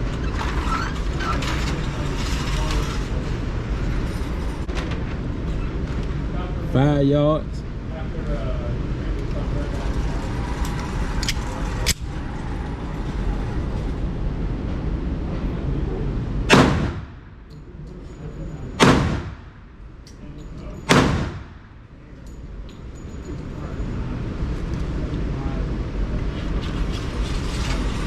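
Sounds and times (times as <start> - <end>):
faint gunshot cracks: 16.5 - 17.1, 18.8 - 19.4, 20.9 - 21.5
gunshots: 16.5 - 17.3, 18.8 - 19.7, 20.8 - 21.7.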